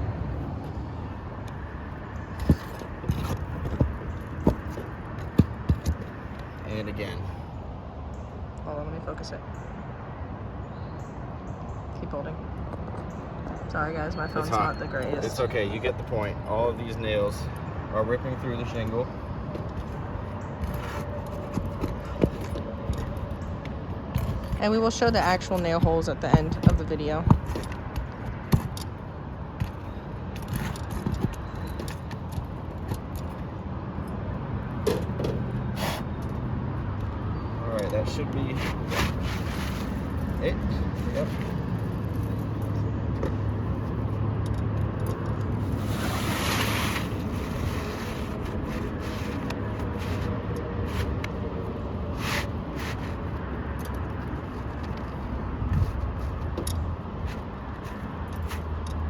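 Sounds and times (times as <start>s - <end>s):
hand tools clicking and scraping: 2.2s - 6.7s, 18.6s - 29.0s, 29.6s - 33.5s, 34.9s - 59.0s
wind rumble on microphone: 53.4s - 57.8s.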